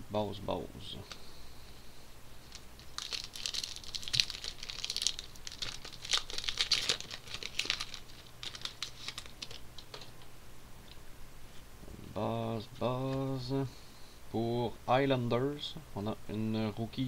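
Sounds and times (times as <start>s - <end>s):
wrapper tearing and crinkling: 2.5s - 9.9s.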